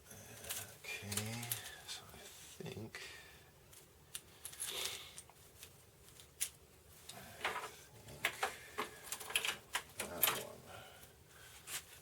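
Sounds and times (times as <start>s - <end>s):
cables rustling: 0.3s - 2.6s, 3.7s - 12.0s.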